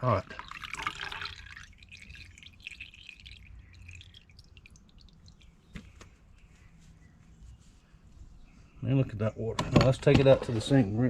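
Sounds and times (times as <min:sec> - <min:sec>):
water dripping into water: 0:00.1 - 0:05.8.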